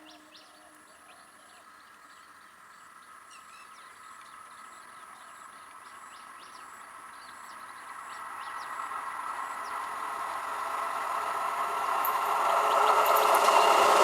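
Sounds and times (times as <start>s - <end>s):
train running on rails: 5.8s - 14.0s.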